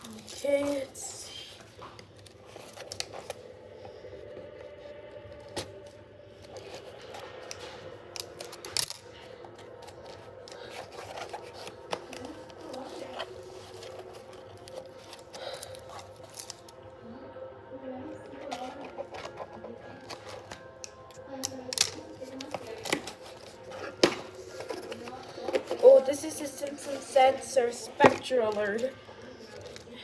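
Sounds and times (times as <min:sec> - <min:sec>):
packaging being handled: 0:00.0 - 0:16.9, 0:18.2 - 0:30.0
scissors cutting cardboard: 0:06.4 - 0:16.8, 0:18.4 - 0:25.9.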